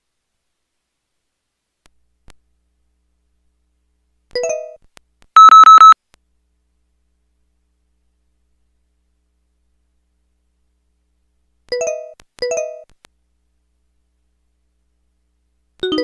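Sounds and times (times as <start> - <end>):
rapid high beeps: 5.4 - 6.0
two-note phone chirp: 5.4 - 6.0.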